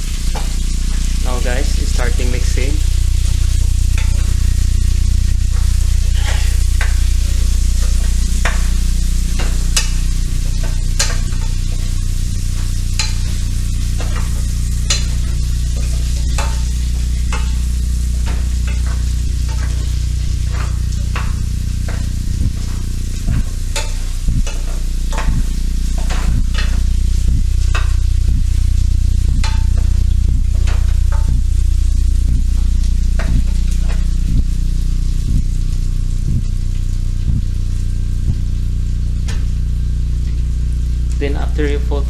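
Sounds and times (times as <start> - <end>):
food sizzling in frying pan: 0.0 - 42.0
low hum: 0.0 - 42.0
utensil scraping pan: 0.2 - 31.3.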